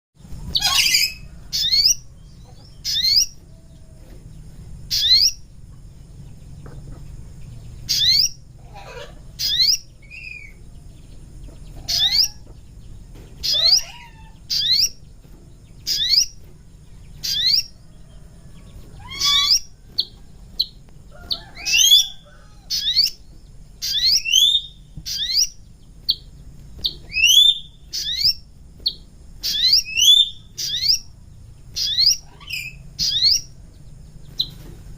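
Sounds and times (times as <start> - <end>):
faint low hum: 0.2 - 34.9
bird lure call rising notes: 21.3 - 23.2, 27.1 - 28.4.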